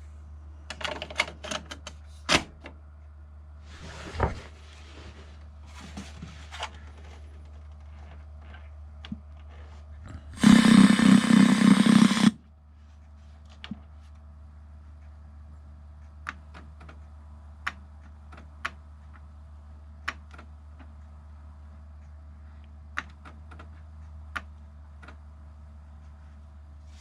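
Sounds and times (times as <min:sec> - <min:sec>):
steady low hum: 0:06.8 - 0:13.2
power tool buzzing: 0:10.3 - 0:12.4.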